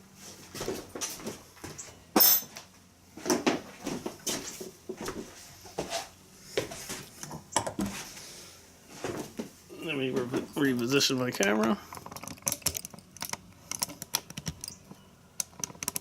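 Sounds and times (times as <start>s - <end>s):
metal tools clinking: 2.2s - 2.6s.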